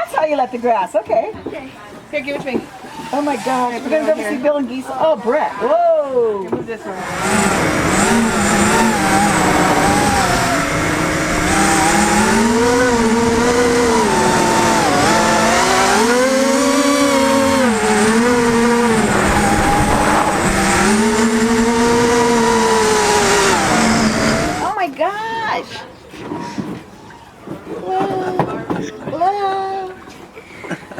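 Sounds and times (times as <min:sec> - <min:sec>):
quadcopter motors whining: 0:06.9 - 0:24.8.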